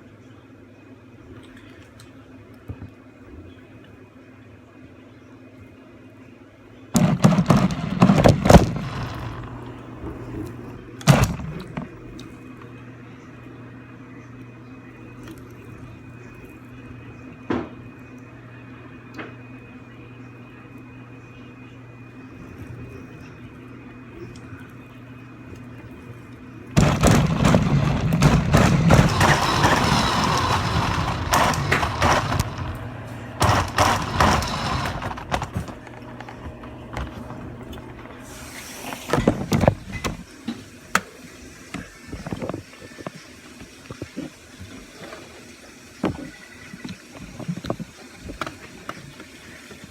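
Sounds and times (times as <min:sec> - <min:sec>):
rc car knocking on bumps: 0:07.0 - 0:12.0, 0:26.8 - 0:35.9
rc car motor and tyres running: 0:07.0 - 0:12.0, 0:26.8 - 0:35.6.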